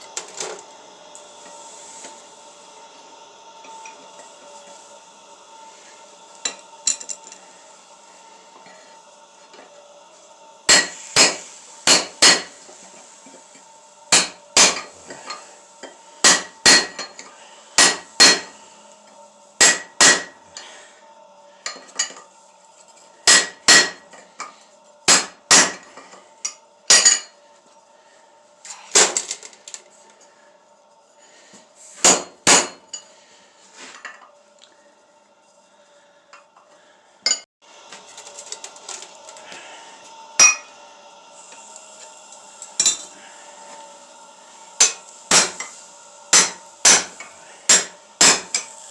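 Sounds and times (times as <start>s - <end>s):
steady hum: 0.0s - 48.9s
hammer striking steel on anvil: 10.7s - 12.6s, 14.1s - 14.9s, 16.2s - 17.2s, 17.8s - 18.5s, 19.6s - 20.4s, 23.2s - 24.1s, 25.1s - 25.9s, 32.0s - 33.0s, 40.4s - 40.7s, 44.8s - 45.7s, 46.3s - 48.7s.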